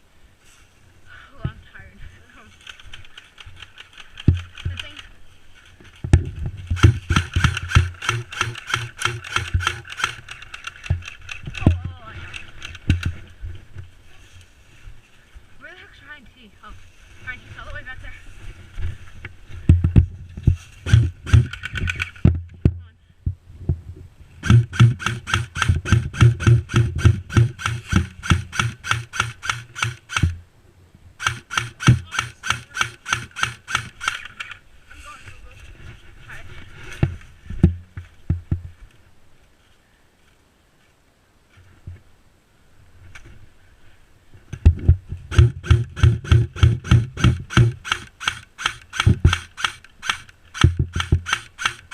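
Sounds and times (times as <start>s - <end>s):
running footsteps with rattling gear: 2.5s - 13.3s
airsoft gun shots: 6.7s - 10.2s, 20.8s - 22.1s, 24.4s - 30.3s, 45.3s - 51.9s.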